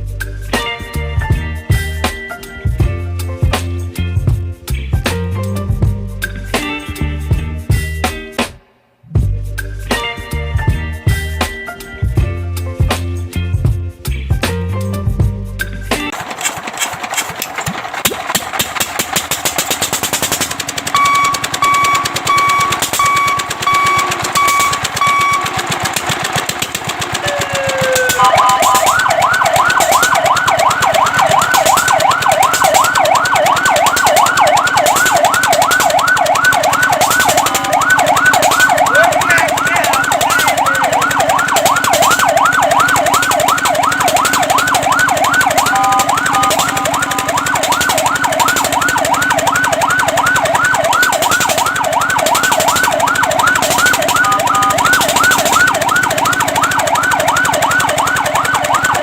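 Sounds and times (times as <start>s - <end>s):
fire truck siren yelping: 16.1s - 59.0s.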